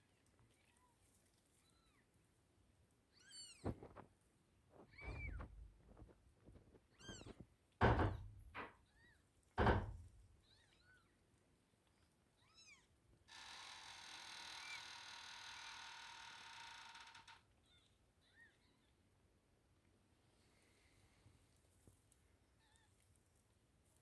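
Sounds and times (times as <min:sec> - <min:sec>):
loud thuds: 0:04.8 - 0:08.7, 0:09.6 - 0:10.2.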